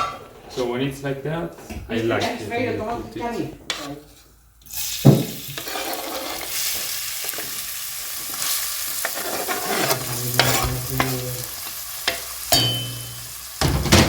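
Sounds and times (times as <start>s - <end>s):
food sizzling in oil: 4.6s - 14.0s.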